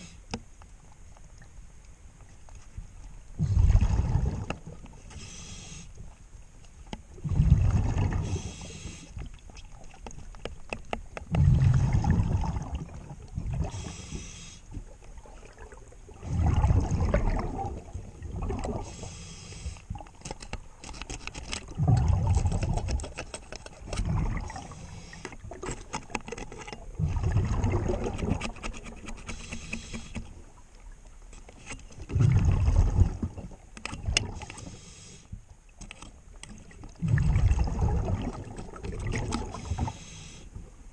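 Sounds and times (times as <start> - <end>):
exhaled bubbles rumbling underwater: 3.3 - 5.2, 7.0 - 10.3, 11.2 - 19.2, 21.7 - 23.0, 23.8 - 25.7, 26.8 - 28.5, 32.0 - 34.5, 36.5 - 40.9
regulator inhale hissing: 5.1 - 6.0, 8.2 - 9.2, 13.6 - 14.7, 18.8 - 19.9, 24.7 - 25.4, 29.3 - 30.2, 34.4 - 35.4, 39.5 - 40.6.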